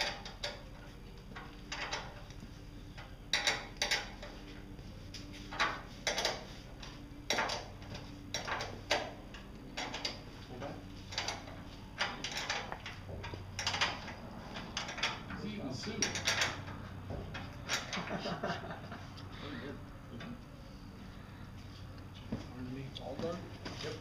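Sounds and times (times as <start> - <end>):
hand ratchet clicking: 3.0 - 4.3.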